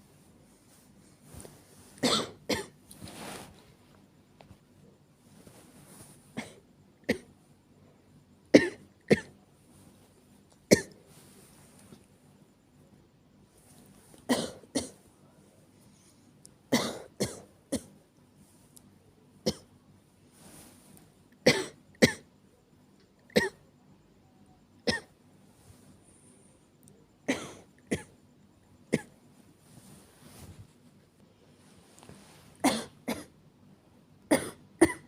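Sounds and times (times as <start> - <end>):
woman coughing: 2.0 - 2.8, 8.6 - 9.3, 14.3 - 15.0, 16.7 - 17.9, 21.4 - 22.3, 27.3 - 28.1, 32.6 - 33.3, 34.3 - 35.0.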